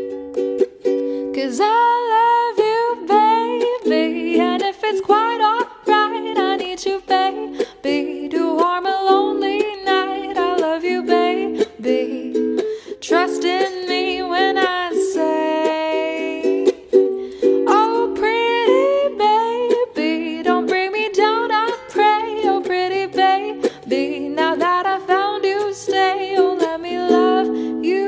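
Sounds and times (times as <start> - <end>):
ukulele strumming: 0.0 - 28.0.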